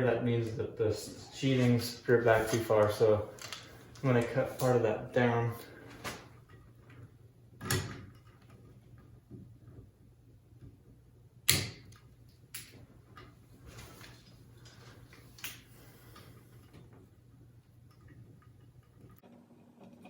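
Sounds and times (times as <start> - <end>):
light clicks and rustling of wires: 0.3 - 9.9, 11.5 - 19.2.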